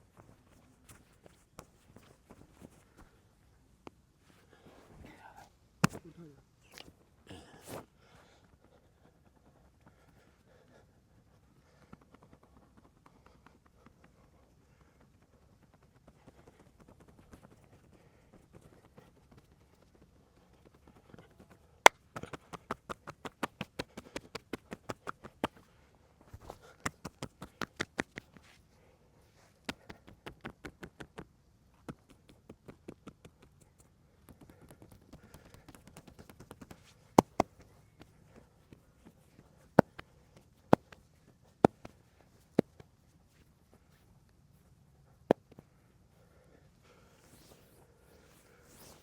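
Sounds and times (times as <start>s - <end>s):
hand strikes on body: 5.8s - 6.1s, 37.2s - 37.5s.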